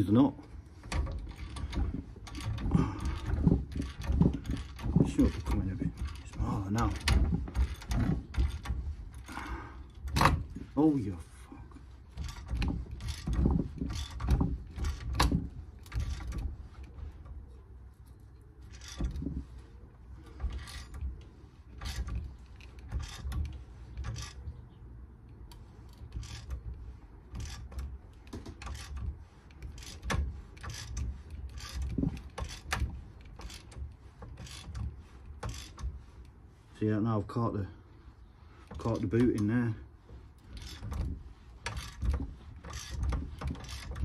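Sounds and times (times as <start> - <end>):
hand ratchet clicking: 0.8 - 10.4, 20.2 - 24.5, 25.3 - 36.0, 40.4 - 44.0.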